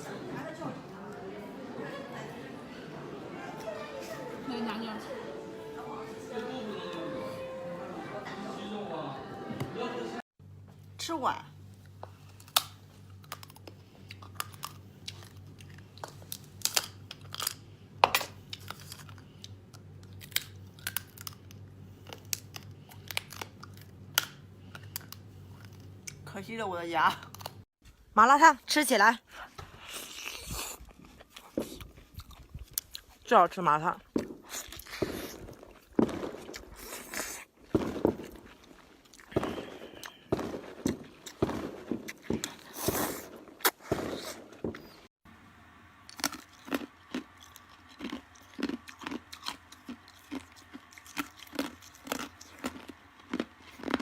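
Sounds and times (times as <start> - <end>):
crunchy chewing and biting: 12.2 - 17.7, 18.3 - 26.2, 29.8 - 33.2, 34.0 - 45.0, 46.0 - 54.0.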